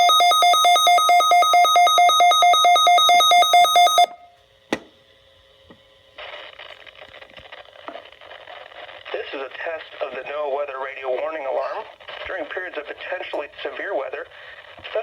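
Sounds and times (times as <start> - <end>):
radio alert alarm beeping: 0.0 - 4.3
faint radio hiss: 6.1 - 15.0.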